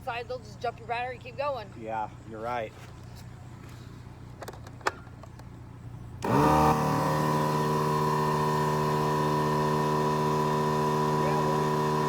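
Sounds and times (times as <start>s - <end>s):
electric motor running: 6.2s - 12.0s.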